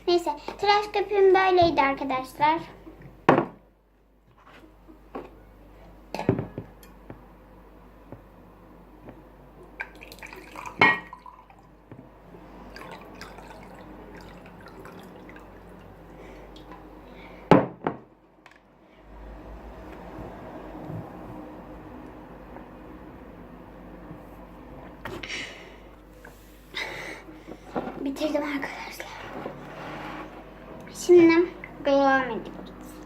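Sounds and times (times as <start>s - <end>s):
water poured into a glass: 9.8s - 11.6s, 12.7s - 15.9s.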